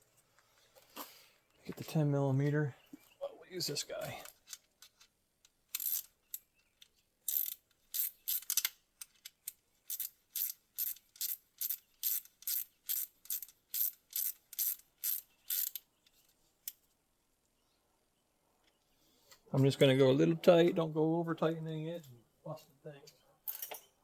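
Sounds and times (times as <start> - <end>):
hand ratchet clicking: 5.7 - 6.5, 7.3 - 15.8.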